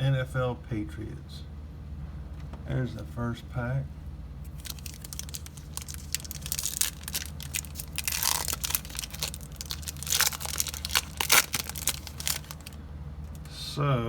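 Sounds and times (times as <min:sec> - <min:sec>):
foil wrapper tearing and crinkling: 0:04.5 - 0:12.8.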